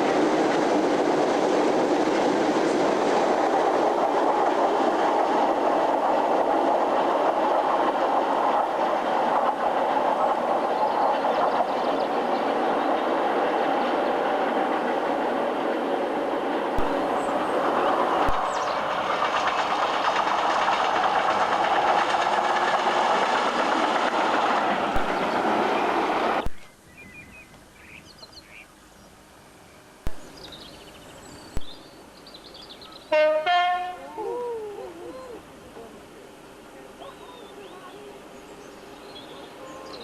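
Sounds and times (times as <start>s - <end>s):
freight train rumbling past: 0.0s - 40.0s
birds chirping: 9.8s - 14.5s, 16.8s - 19.0s, 25.0s - 33.3s, 34.1s - 40.0s.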